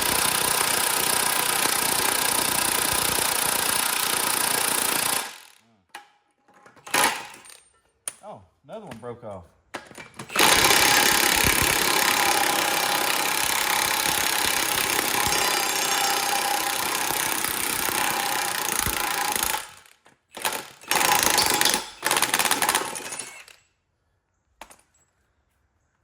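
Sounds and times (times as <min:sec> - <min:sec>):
power tool running: 0:00.0 - 0:05.6, 0:10.3 - 0:23.6.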